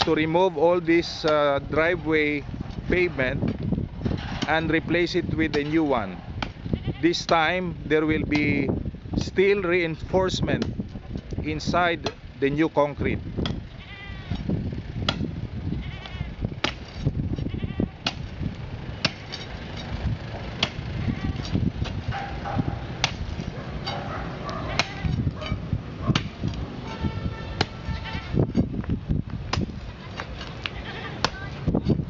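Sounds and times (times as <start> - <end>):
strikes on concrete: 19.0 - 19.9, 21.4 - 27.9.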